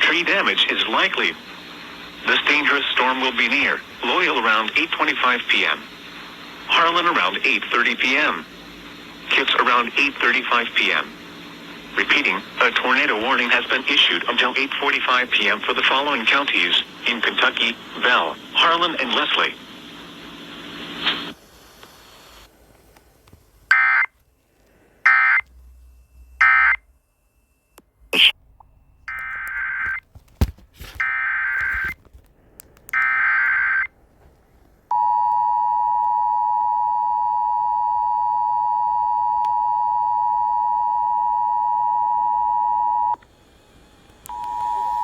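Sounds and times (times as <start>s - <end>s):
short data bursts: 25.0s - 28.4s
clicks: 31.6s - 33.1s.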